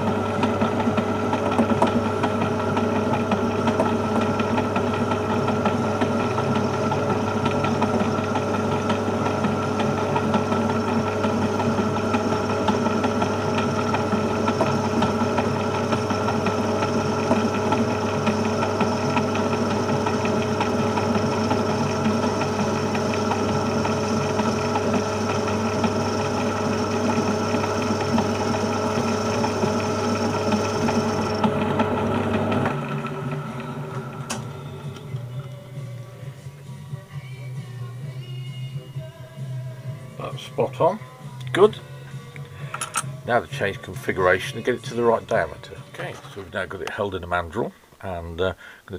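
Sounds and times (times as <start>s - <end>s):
lathe motor hum: 0.0s - 37.2s, 38.8s - 47.3s
high machine tone: 10.4s - 36.0s.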